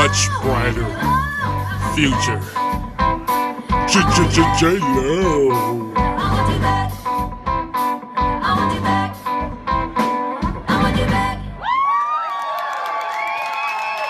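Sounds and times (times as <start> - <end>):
guitar music over beat: 0.0 - 10.6.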